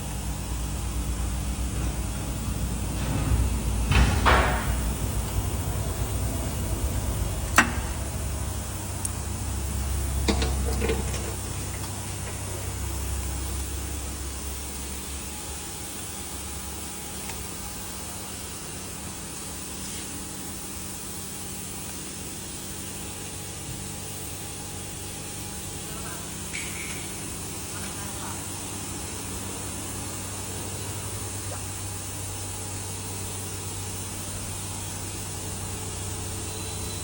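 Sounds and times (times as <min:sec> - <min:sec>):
knocks: 0:02.9 - 0:05.1.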